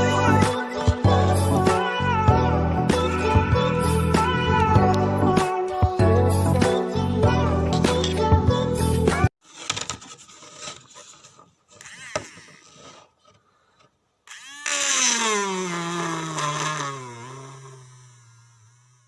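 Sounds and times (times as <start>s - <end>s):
small motor whirring: 11.8s - 12.9s, 14.3s - 19.0s.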